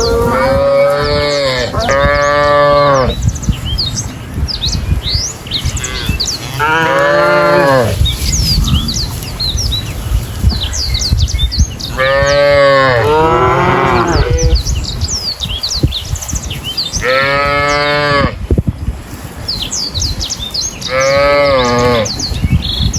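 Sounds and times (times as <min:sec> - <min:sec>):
cattle mooing: 0:00.0 - 0:03.1, 0:05.8 - 0:08.0, 0:12.0 - 0:14.6
small birds chirping: 0:00.0 - 0:18.2, 0:19.1 - 0:22.9.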